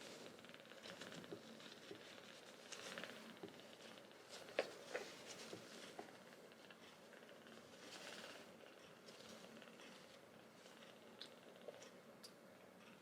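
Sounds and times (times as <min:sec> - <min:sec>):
faint rustling: 0:00.0 - 0:11.9
small ticks: 0:00.2 - 0:13.0.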